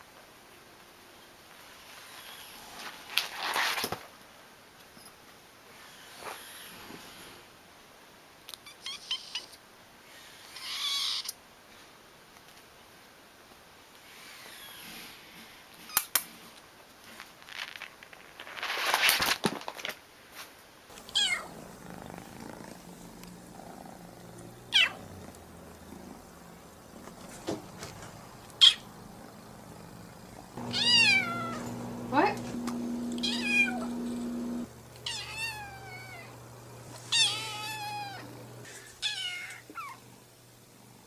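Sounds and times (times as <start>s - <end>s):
rustles and clicks: 16.2s - 23.4s, 24.2s - 32.9s
kitten purring: 20.9s - 38.8s
kittens meowing: 21.0s - 22.0s, 24.7s - 25.4s, 28.4s - 31.8s, 33.2s - 34.0s, 35.0s - 36.4s, 37.1s - 38.3s.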